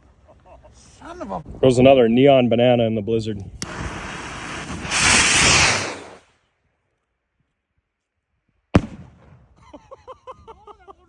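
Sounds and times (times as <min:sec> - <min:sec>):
firework bang: 0:03.6 - 0:06.2, 0:08.8 - 0:09.4
firework rocket rushing hiss: 0:03.6 - 0:06.3.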